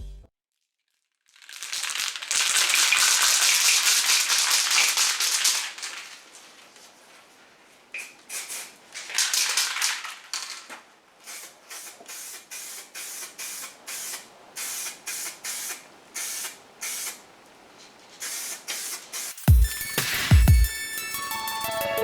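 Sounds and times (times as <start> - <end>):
aerosol spray can hissing: 2.3 - 6.2, 8.0 - 17.3, 18.2 - 21.0.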